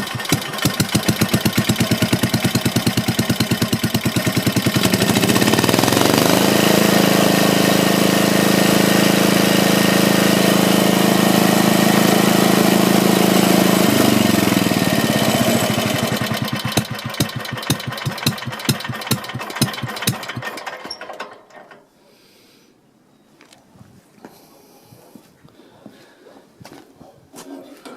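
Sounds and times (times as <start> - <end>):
engine running and slowing: 0.0 - 21.8.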